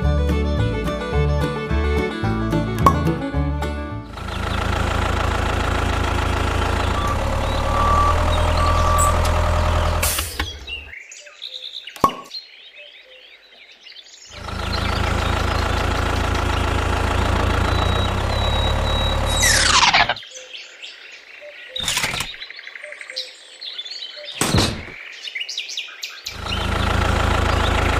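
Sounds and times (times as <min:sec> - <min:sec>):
tractor engine running: 0:02.7 - 0:10.9, 0:14.3 - 0:20.2, 0:26.3 - 0:27.9
birds chirping: 0:04.1 - 0:27.9.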